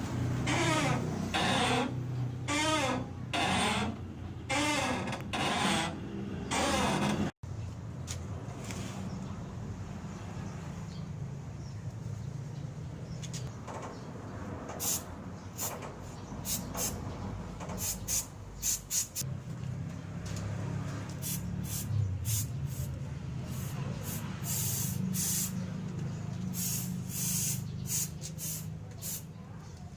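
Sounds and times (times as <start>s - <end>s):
spray paint can hissing: 14.8s - 15.8s, 16.4s - 17.0s, 17.8s - 19.2s, 21.2s - 25.6s, 26.5s - 29.3s.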